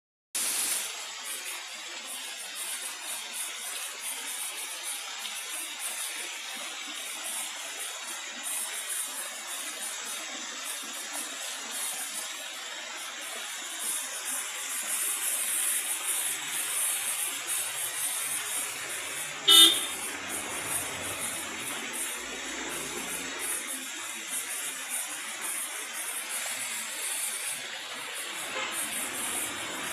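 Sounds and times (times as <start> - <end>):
waterfall rushing: 13.9 - 29.9
vehicle horn toot: 19.4 - 20.1.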